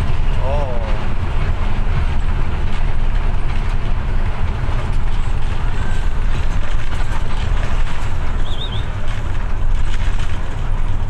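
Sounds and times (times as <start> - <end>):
bus diesel engine rumble: 0.0 - 11.0
road noise: 0.0 - 11.0.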